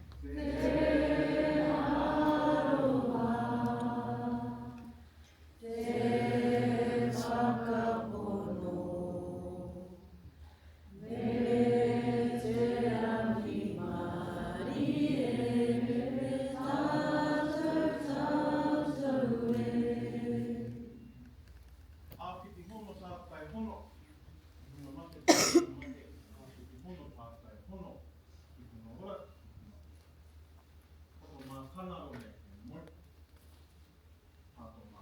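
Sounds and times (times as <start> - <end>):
group singing unaccompanied: 0.2 - 10.2, 10.9 - 21.2.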